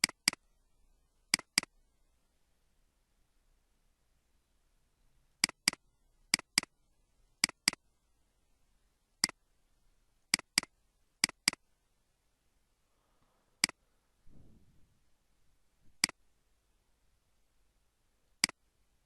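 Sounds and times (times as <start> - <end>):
computer mouse clicking: 0.0 - 0.4, 1.3 - 1.7, 5.4 - 6.7, 7.4 - 7.8, 10.3 - 11.6, 13.6 - 13.8, 16.0 - 16.2, 18.4 - 18.6
low rustle: 12.9 - 15.2.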